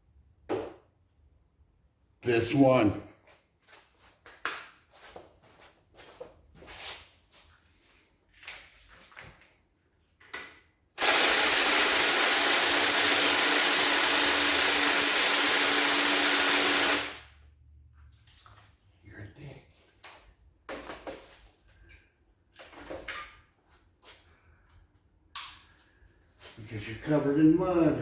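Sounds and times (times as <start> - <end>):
hand ratchet clicking: 11.0 - 17.2
power tool running with hum: 11.0 - 17.2.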